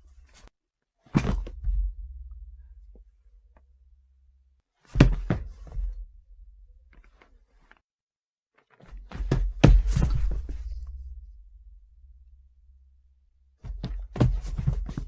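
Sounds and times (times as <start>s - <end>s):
body falling with heavy thuds: 1.1s - 2.4s, 4.9s - 6.1s, 9.0s - 11.2s, 13.6s - 15.0s.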